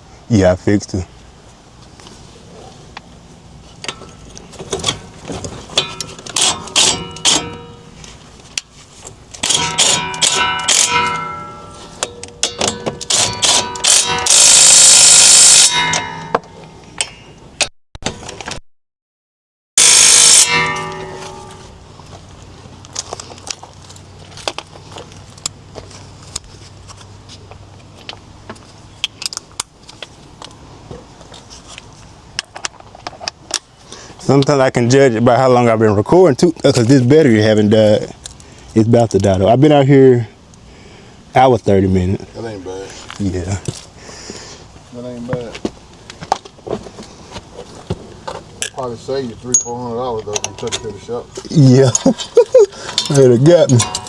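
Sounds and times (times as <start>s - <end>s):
steel tools clinking and knocking: 5.7s - 7.9s, 9.4s - 14.4s, 49.5s - 51.1s, 51.9s - 54.0s
sharp ringing strikes: 5.8s - 8.0s, 9.4s - 16.8s, 19.8s - 21.9s, 49.5s - 51.3s, 53.1s - 54.0s
steady low hum: 19.8s - 28.9s.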